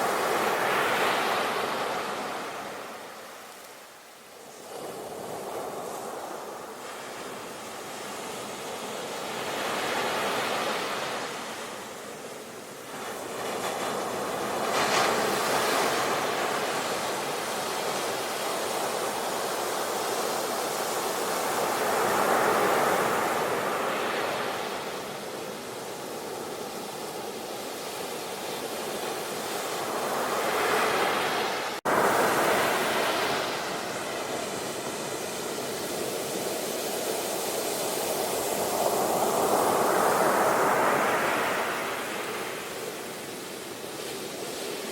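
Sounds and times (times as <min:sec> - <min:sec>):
ocean waves breaking on shore: 0:00.0 - 0:44.9.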